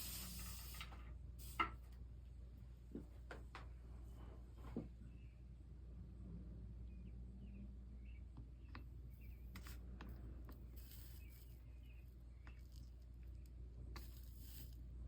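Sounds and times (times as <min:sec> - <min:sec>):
low steady hum: 0:00.0 - 0:15.0
small bird chirping: 0:06.8 - 0:14.8.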